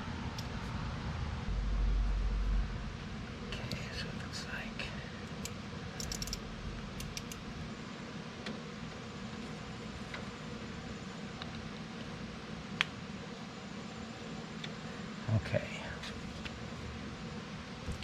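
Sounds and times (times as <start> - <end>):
low background hum: 0.0 - 18.0.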